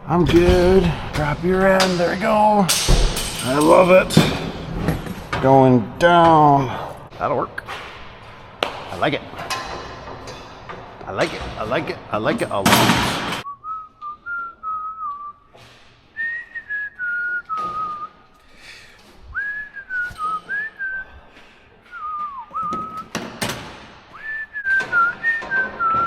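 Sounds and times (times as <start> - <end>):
person whistling a tune: 13.4 - 15.4, 16.2 - 18.2, 19.4 - 21.2, 21.9 - 23.1, 24.2 - 26.0.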